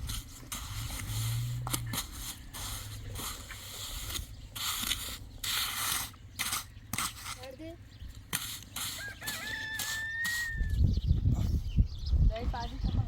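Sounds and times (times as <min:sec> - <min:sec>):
shovels scraping wet concrete: 0:00.0 - 0:10.6.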